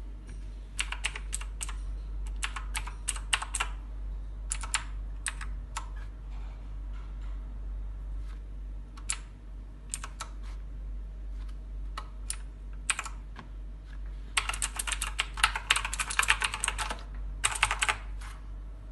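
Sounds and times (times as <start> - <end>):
mechanical keyboard typing: 0.8 - 3.8, 4.5 - 5.9, 9.0 - 9.3, 9.9 - 10.4, 12.0 - 13.2, 14.4 - 18.2.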